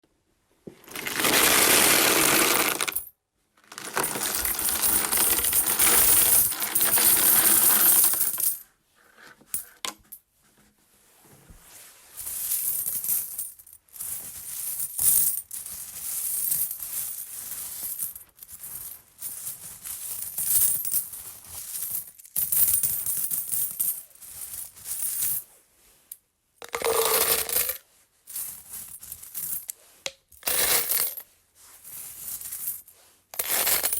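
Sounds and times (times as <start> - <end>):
coins jingling and clinking: 1.0 - 3.1, 3.8 - 8.6, 26.7 - 27.8, 30.4 - 31.2, 32.0 - 33.9
coin drops: 1.1 - 3.1.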